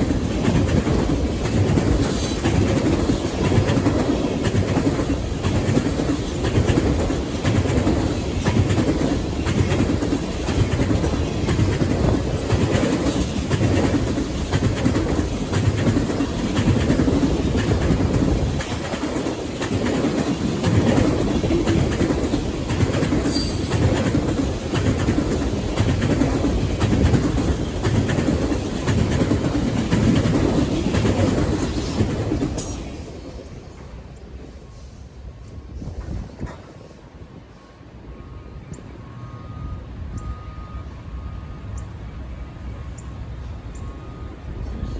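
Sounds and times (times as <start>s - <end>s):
wheels clacking over rail joints: 0.0s - 34.0s
train cars rumbling past: 0.0s - 44.9s.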